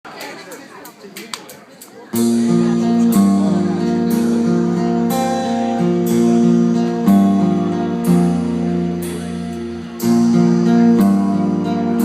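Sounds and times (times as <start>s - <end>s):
acoustic guitar strumming: 2.1s - 12.0s.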